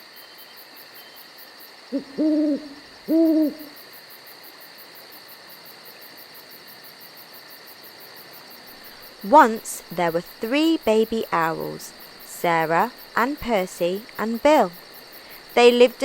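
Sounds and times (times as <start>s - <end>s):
crickets chirping: 0.0s - 16.0s
owl hooting: 1.9s - 3.8s.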